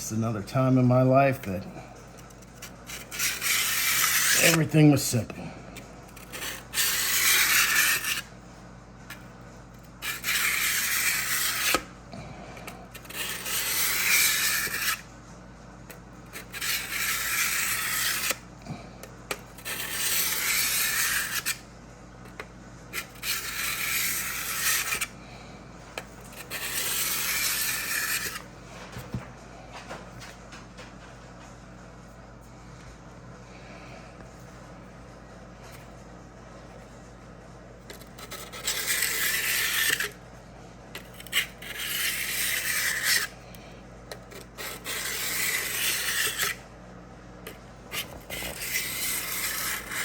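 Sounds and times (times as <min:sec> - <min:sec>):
sharpening block scraping steel blade: 0:02.9 - 0:04.7, 0:06.3 - 0:08.2, 0:10.0 - 0:11.9, 0:13.0 - 0:15.0, 0:16.4 - 0:18.4, 0:19.6 - 0:21.6, 0:23.0 - 0:25.1, 0:26.3 - 0:28.4, 0:37.9 - 0:40.2, 0:41.0 - 0:43.3, 0:44.3 - 0:46.6, 0:47.9 - 0:50.0.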